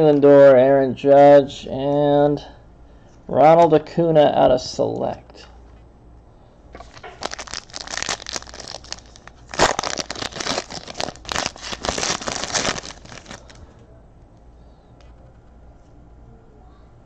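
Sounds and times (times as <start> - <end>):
foil wrapper crinkling and tearing: 6.8 - 13.6.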